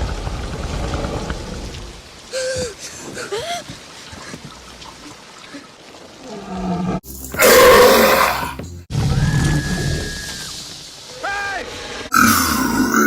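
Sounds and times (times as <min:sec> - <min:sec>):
film soundtrack: 0:07.0 - 0:13.0
man's loud raspy burp: 0:07.4 - 0:08.6, 0:12.1 - 0:13.0.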